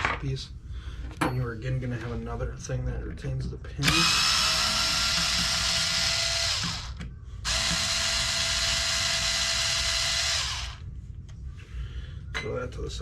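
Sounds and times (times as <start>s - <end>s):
electric drill whining: 3.8s - 10.8s.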